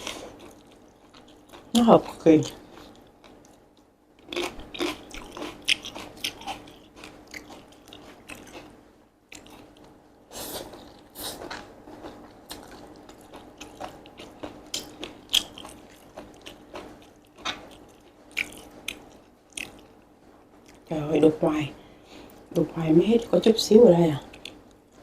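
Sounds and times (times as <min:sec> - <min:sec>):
chewing and crunching noodles: 0:00.0 - 0:20.9, 0:24.2 - 0:25.0.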